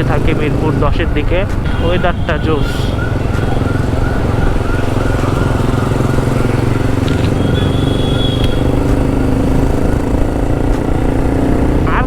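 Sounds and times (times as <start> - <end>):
motorcycle engine cruising: 0.0 - 12.0.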